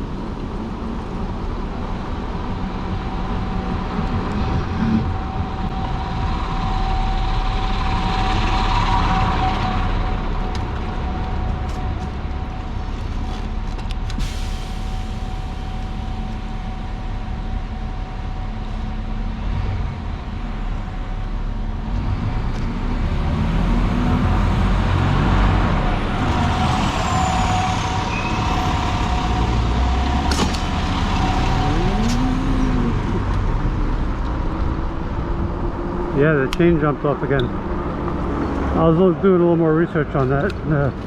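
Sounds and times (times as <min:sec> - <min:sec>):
wind on microphone: 0:00.0 - 0:12.9
road noise: 0:00.0 - 0:41.0.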